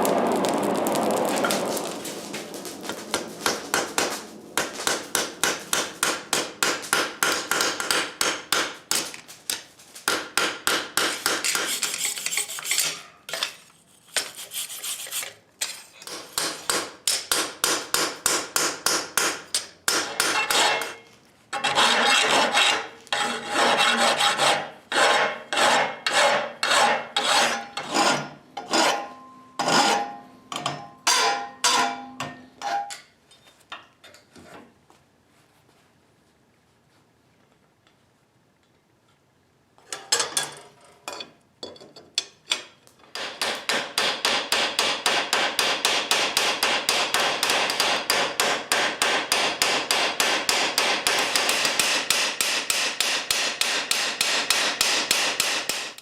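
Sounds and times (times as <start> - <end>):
hand tool rasping on steel: 11.1 - 13.0, 13.9 - 15.9, 21.6 - 29.0.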